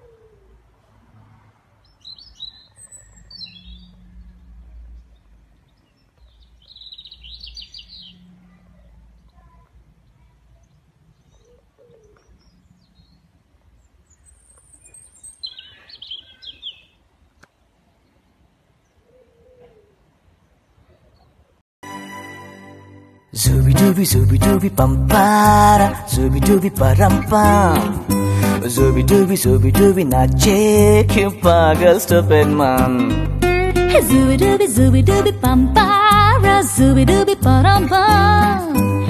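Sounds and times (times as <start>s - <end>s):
birds chirping: 1.8s - 21.6s.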